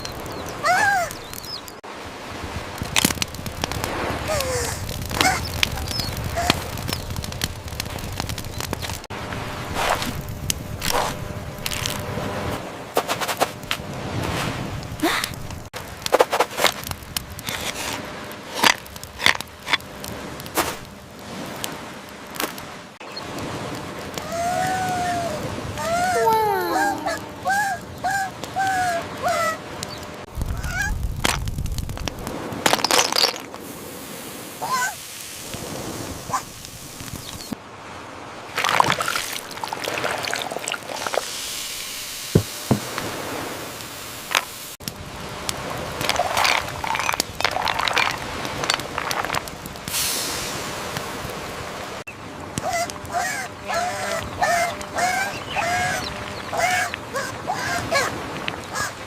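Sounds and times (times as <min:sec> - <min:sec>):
steady hiss: 0:33.6 - 0:37.6, 0:41.0 - 0:44.8, 0:49.7 - 0:51.2.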